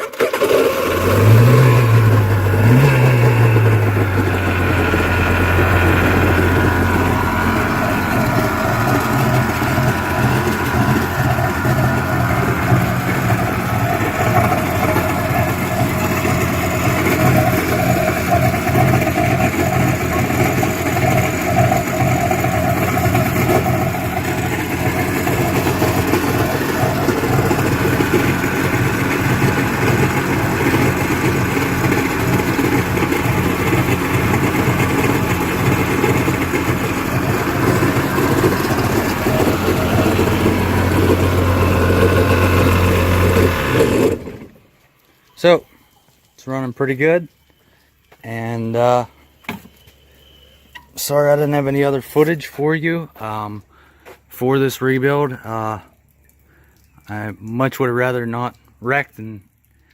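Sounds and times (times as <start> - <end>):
two-stroke engine running: 0.0 - 44.6.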